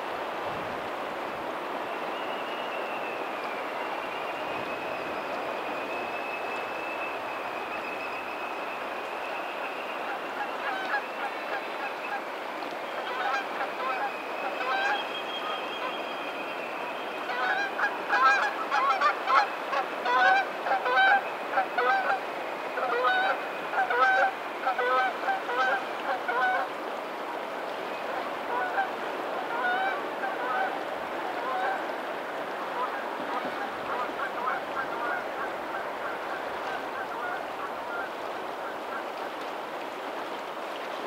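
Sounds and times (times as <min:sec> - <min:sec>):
waterfowl honking: 0:09.5 - 0:12.2, 0:13.0 - 0:16.2, 0:17.2 - 0:22.2, 0:22.8 - 0:26.7, 0:28.5 - 0:30.8, 0:31.4 - 0:31.8, 0:32.7 - 0:39.1.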